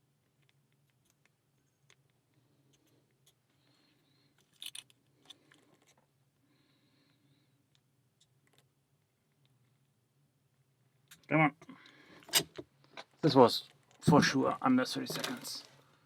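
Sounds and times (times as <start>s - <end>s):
lock picking metallic clicks: 4.4s - 5.0s.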